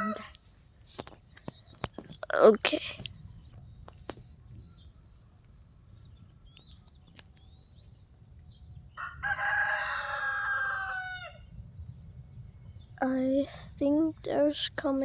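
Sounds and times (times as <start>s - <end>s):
rooster crowing: 9.0s - 11.5s.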